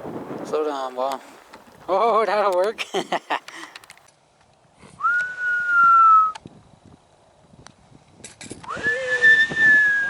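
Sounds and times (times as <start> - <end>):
whistled notes sliding in pitch: 5.0 - 6.4, 8.7 - 10.0.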